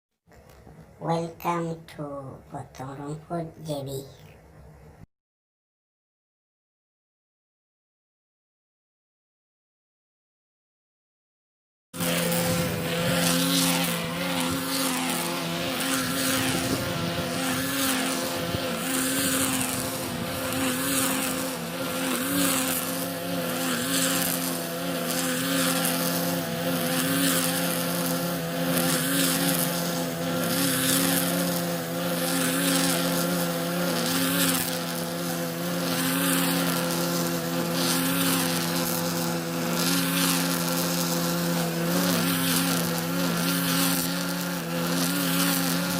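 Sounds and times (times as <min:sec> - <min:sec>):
grass cutter engine running: 0:12.0 - 0:45.9
hiss of cutting grass: 0:12.0 - 0:45.9.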